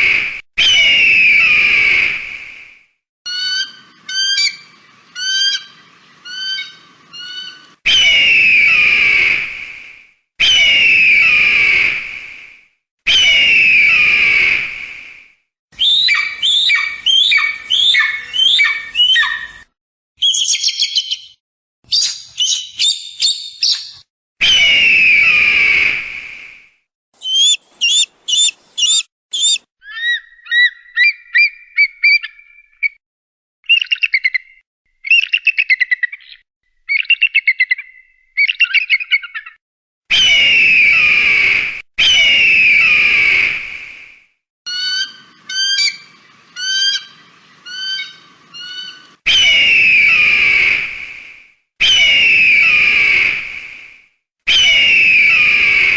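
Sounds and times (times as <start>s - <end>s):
eagle calls: 15.8s - 19.6s, 27.2s - 32.5s.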